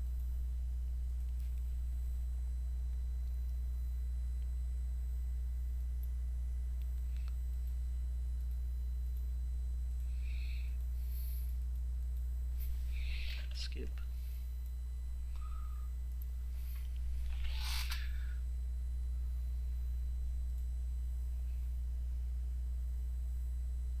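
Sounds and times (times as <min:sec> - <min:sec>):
low electrical hum: 0:00.0 - 0:24.0
faint ticks: 0:05.7 - 0:13.4.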